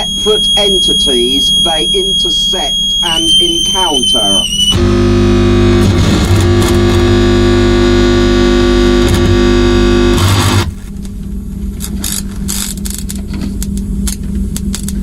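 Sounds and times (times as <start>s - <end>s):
loud distorted drone: 0.0s - 14.1s
low hum and noise: 0.0s - 15.0s
clicks and crackles: 10.3s - 15.0s.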